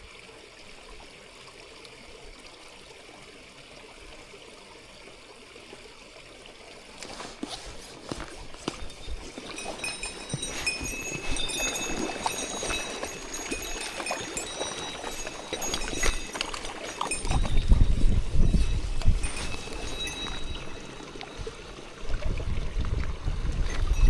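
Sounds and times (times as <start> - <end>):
stream water running over rocks: 0.0 - 24.0
thin high tones: 8.0 - 22.0.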